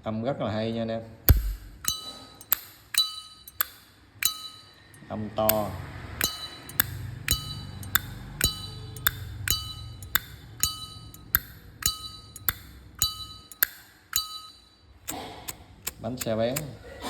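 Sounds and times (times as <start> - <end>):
metallic lighter clink: 1.3 - 16.8
lighter lid snapping open and shut: 6.7 - 14.3, 15.1 - 16.7.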